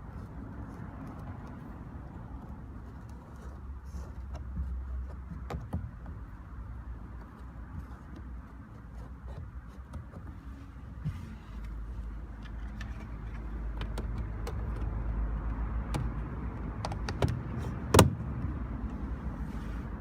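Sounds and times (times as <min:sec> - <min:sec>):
low rumble inside car: 0:00.0 - 0:20.0.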